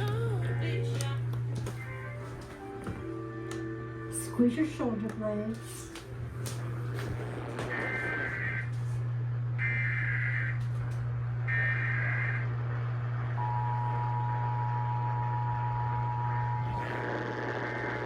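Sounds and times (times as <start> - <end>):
steady low hum: 0.0 - 18.0
screechy data tone bursts: 9.6 - 10.6, 11.5 - 12.6.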